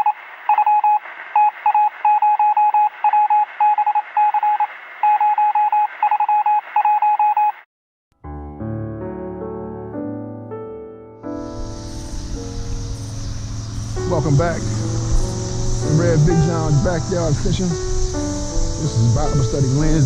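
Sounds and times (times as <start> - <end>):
rapid electronic beeping: 0.0 - 7.6, 13.4 - 20.0
instrumental music: 8.2 - 20.0
radio hiss: 11.8 - 20.0.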